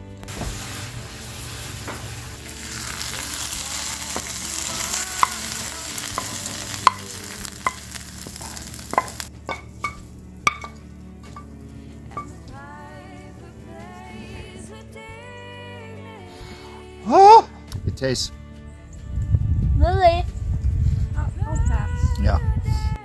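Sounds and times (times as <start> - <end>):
sled sliding over snow: 0.0 - 9.3.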